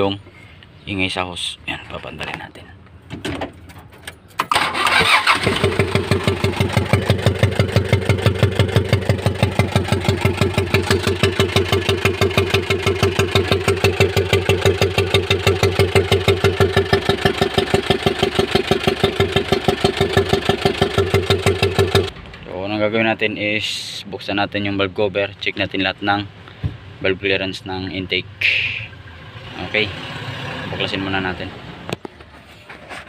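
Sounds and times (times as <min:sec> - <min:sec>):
engine starting and clattering: 0:03.3 - 0:22.5.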